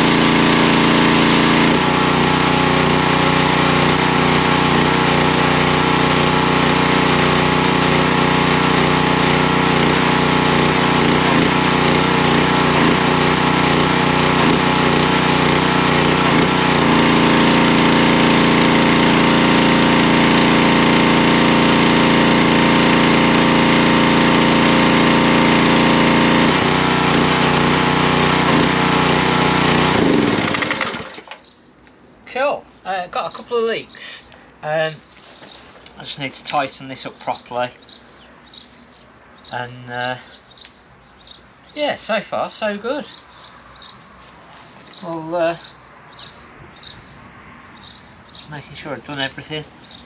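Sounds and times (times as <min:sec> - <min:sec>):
pressure washer engine running: 0:00.0 - 0:31.5, 0:48.3 - 0:50.0.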